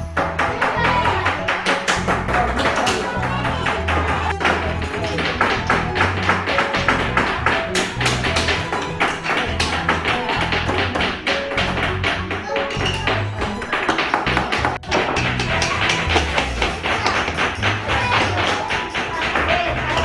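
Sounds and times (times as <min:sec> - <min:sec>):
background music with bass line: 0:00.0 - 0:20.0
hammers tapping nails into wood: 0:00.2 - 0:20.0.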